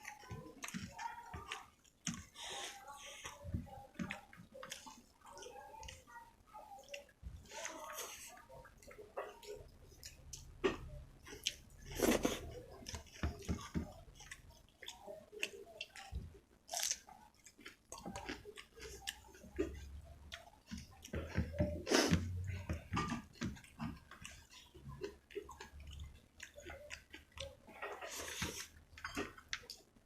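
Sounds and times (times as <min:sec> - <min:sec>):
wet chewing and mouth smacks: 0:06.7 - 0:29.9.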